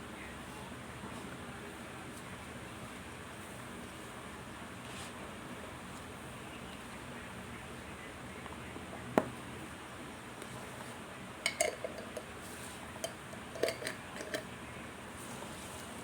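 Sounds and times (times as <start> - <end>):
mothballs clicking and clinking: 13.0 - 14.5.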